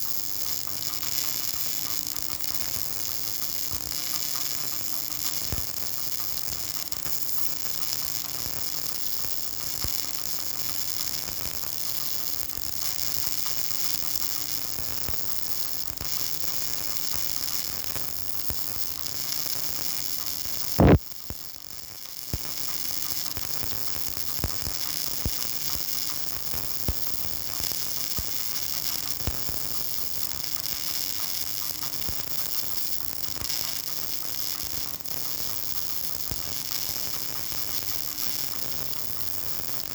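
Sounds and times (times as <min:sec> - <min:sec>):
welding arc crackling hiss: 0:00.0 - 0:39.9
faint hum: 0:20.8 - 0:21.0.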